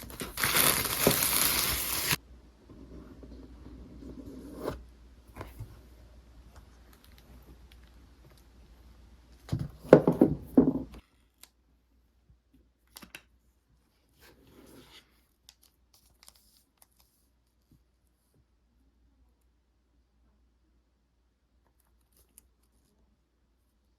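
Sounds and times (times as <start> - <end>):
packaging tearing rustle: 0.0 - 2.2.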